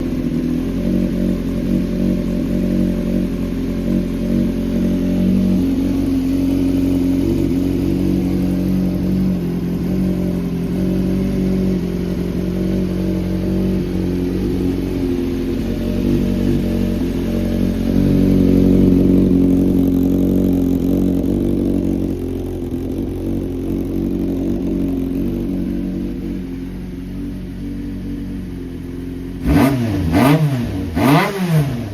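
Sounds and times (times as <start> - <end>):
motorcycle engine running: 0.0 - 31.9.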